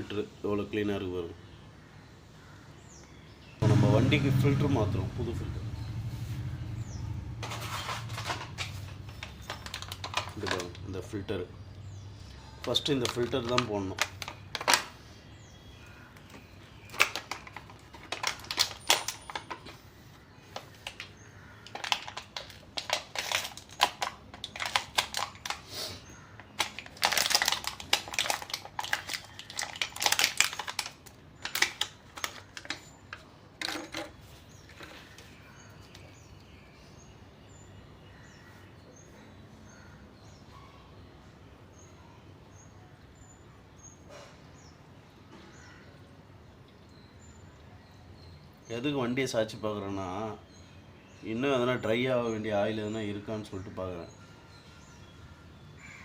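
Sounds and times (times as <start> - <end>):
small parts and tools clattering: 7.4 - 10.9, 12.6 - 15.0, 16.2 - 19.9, 20.5 - 25.7, 26.4 - 36.2
faint bird chirps: 34.4 - 46.0.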